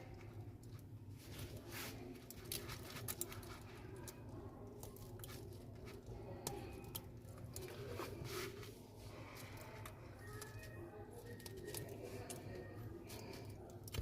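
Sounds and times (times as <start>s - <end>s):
steady low hum: 0.0s - 14.0s
small parts and tools clicking: 2.2s - 8.2s, 9.3s - 14.0s.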